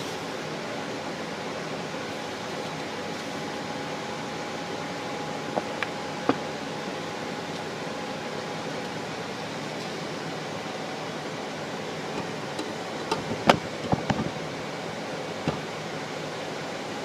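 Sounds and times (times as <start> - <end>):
sharp knocks or clicks: 13.0 - 14.3.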